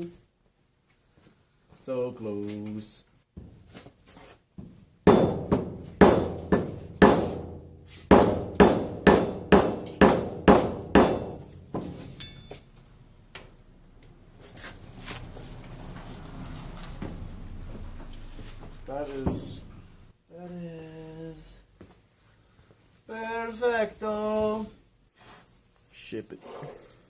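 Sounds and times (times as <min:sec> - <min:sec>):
mallet tapping metal: 0:05.1 - 0:12.6.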